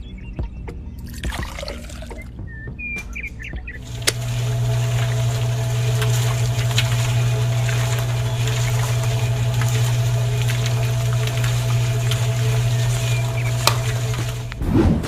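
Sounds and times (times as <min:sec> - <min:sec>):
small motor humming: 0:03.8 - 0:14.6.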